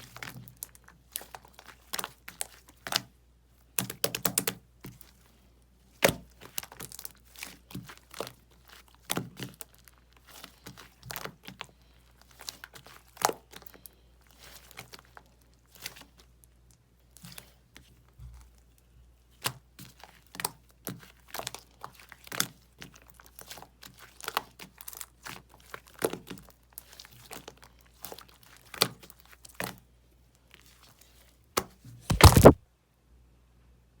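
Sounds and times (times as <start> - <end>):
slime clicking and crackling: 19.4 - 29.7, 32.1 - 32.6.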